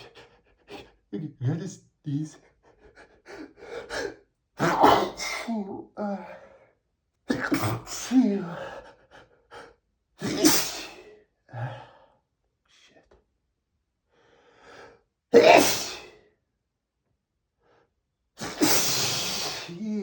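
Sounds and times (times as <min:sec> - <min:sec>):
man sneezing: 0:04.6 - 0:05.5, 0:07.3 - 0:08.7, 0:10.2 - 0:11.7, 0:15.4 - 0:16.2, 0:18.4 - 0:20.0.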